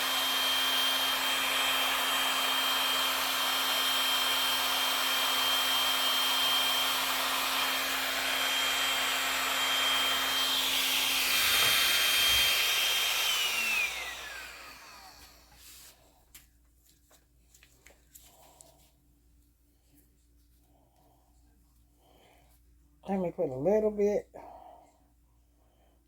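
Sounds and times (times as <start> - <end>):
electric air blower whining: 0.0 - 15.9.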